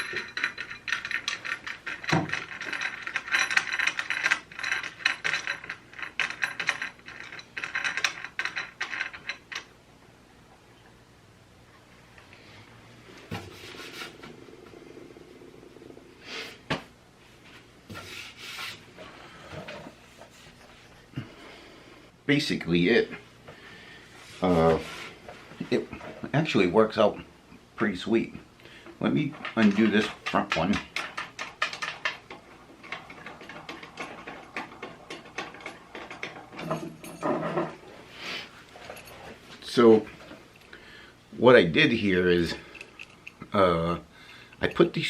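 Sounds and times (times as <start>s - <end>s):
wing nut clicking and rattling: 0.0s - 9.7s, 29.2s - 37.8s, 42.6s - 43.4s
hands rubbing and scraping hardware: 13.1s - 14.8s, 16.4s - 21.2s.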